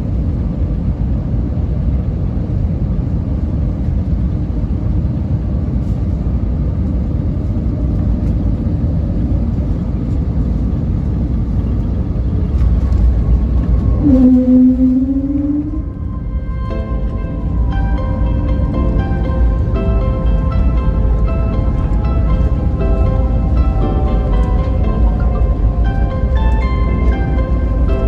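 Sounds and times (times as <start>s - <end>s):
loud low rumble of engines: 0.0s - 28.0s
faint steady hums: 6.8s - 28.0s.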